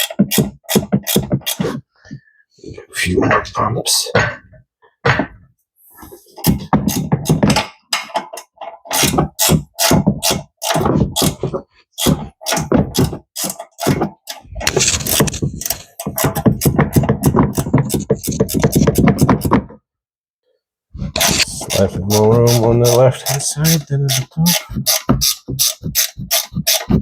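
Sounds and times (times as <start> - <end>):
ratchet wrench clicking: 25.6 - 26.9.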